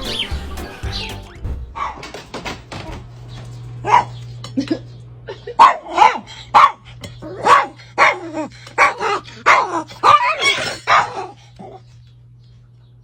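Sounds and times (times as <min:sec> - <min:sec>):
dog barking: 0:01.8 - 0:02.1, 0:03.8 - 0:04.2, 0:05.5 - 0:11.8.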